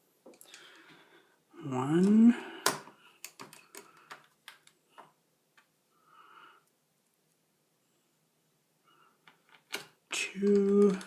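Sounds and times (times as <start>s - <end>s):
faint breath: 0.4s - 1.5s, 5.9s - 6.7s.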